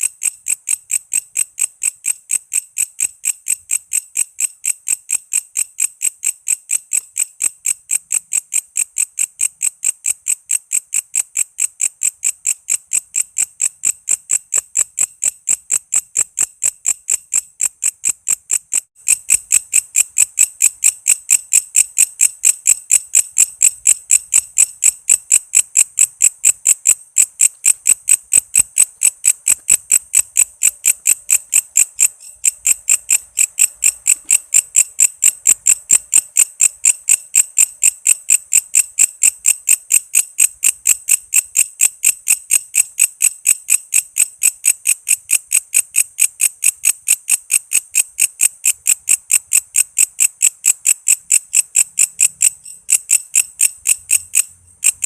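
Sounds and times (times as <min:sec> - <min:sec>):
katydid shrill chirps: 0:22.6 - 0:34.6, 0:51.5 - 0:55.0.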